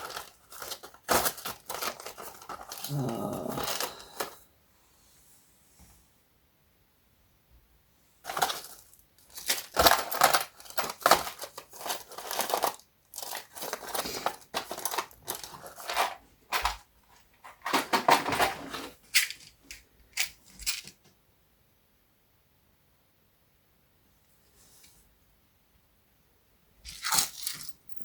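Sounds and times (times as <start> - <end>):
rustling and crinkling packaging: 0.0 - 4.4, 8.2 - 21.0, 26.9 - 28.0.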